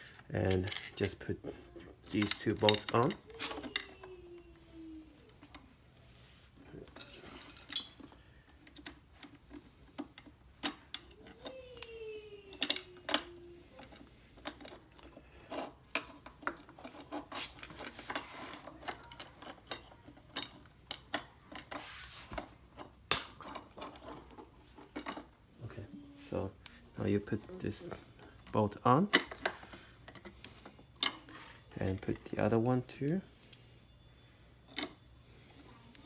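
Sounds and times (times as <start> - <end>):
metallic clinks of bolts and tools: 6.9 - 8.9.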